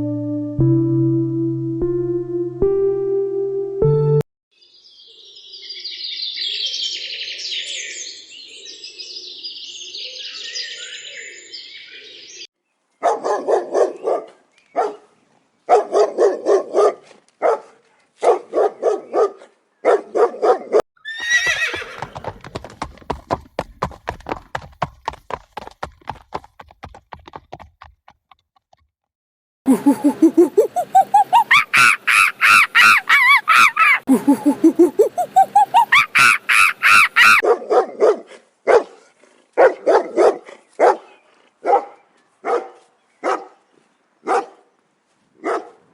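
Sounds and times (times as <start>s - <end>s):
horses neighing: 21.0s - 24.0s.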